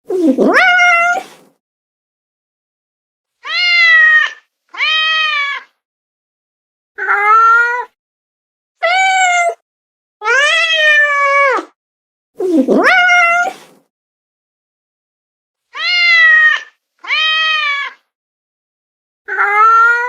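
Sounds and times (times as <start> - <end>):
cat meowing: 0.3 - 1.3, 3.4 - 5.8, 7.0 - 8.0, 8.8 - 9.6, 10.2 - 11.7, 12.7 - 13.7, 15.8 - 18.1, 19.3 - 20.0.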